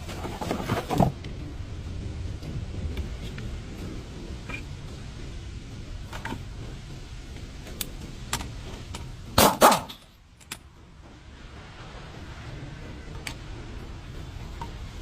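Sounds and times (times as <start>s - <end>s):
low steady hum: 0.0s - 15.0s
loud metal clanks: 8.3s - 10.2s.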